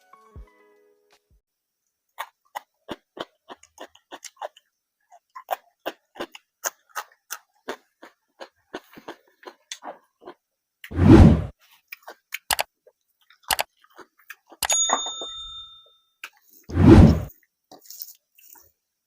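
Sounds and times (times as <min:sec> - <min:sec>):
wet eating clicks and smacks: 0:02.1 - 0:10.4, 0:11.9 - 0:14.8.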